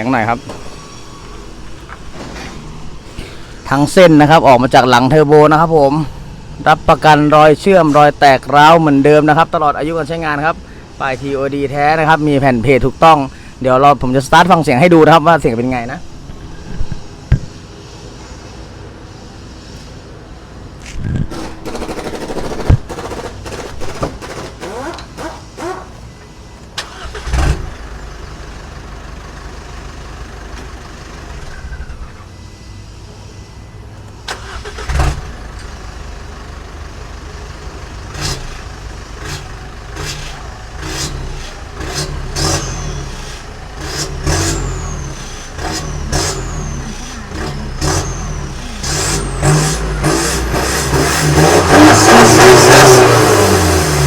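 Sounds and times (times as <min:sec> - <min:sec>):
diesel engine revving: 0:21.3 - 0:26.1, 0:26.8 - 0:32.2, 0:34.2 - 0:54.0.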